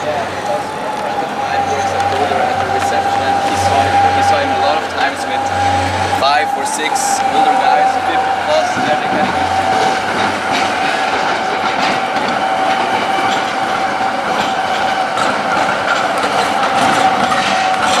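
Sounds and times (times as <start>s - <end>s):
tram rolling on rails: 0.0s - 18.0s.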